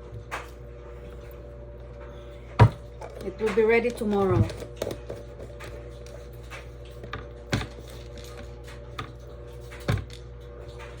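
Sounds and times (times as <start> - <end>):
objects clicking and tapping: 2.6 - 11.0.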